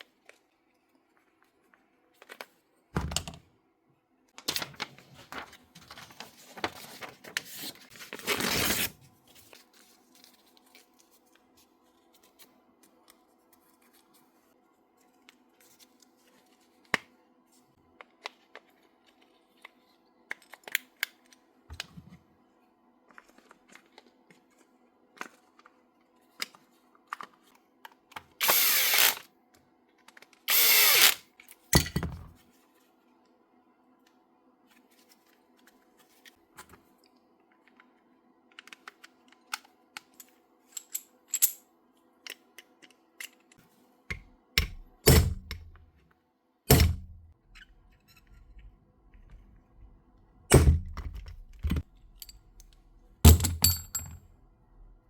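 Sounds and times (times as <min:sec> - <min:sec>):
cordless power tool running: 0:28.4 - 0:29.2, 0:30.5 - 0:31.2
tools and parts clicking: 0:38.6 - 0:41.6, 0:42.2 - 0:45.7, 0:50.9 - 0:54.2.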